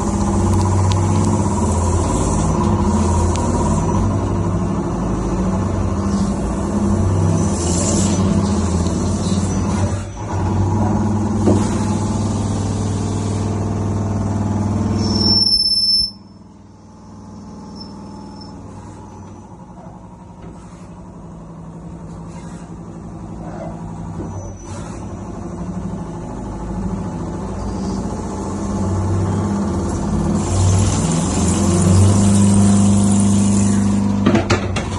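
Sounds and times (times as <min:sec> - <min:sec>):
lathe running and cutting: 0:00.0 - 0:15.0, 0:25.5 - 0:34.2
high squeal: 0:14.9 - 0:16.6, 0:17.4 - 0:19.4.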